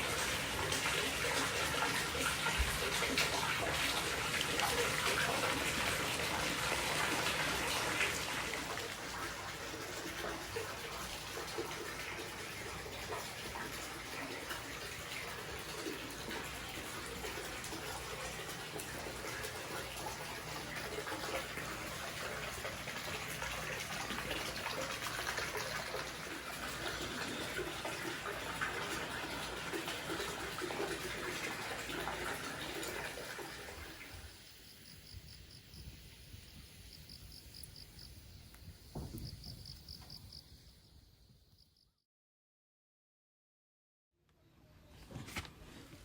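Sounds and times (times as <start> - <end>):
water running: 0.0 - 40.2
crickets chirping: 31.9 - 42.0.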